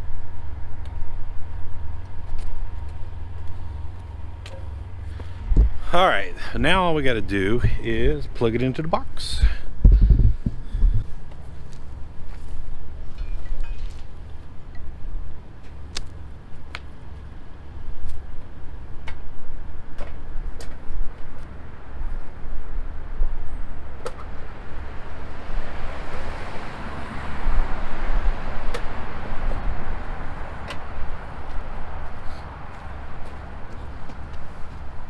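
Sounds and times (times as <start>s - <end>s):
vehicles rumbling: 0.0s - 35.0s
wind on microphone: 5.4s - 5.9s, 7.4s - 8.4s, 9.4s - 11.2s.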